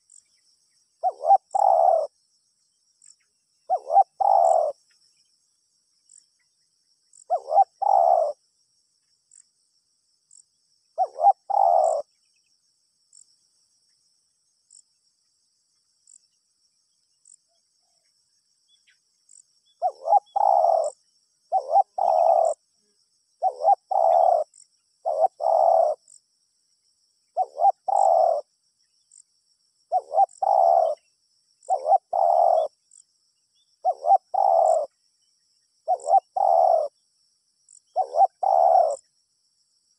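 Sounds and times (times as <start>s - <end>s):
insects ticking and buzzing: 0.0s - 39.9s
dove cooing: 1.0s - 2.2s, 3.7s - 4.8s, 7.2s - 8.4s, 11.0s - 12.1s, 19.8s - 22.6s, 23.4s - 26.1s, 27.4s - 28.5s, 29.9s - 31.0s, 31.6s - 32.8s, 33.8s - 34.9s, 35.8s - 36.9s, 37.9s - 39.0s.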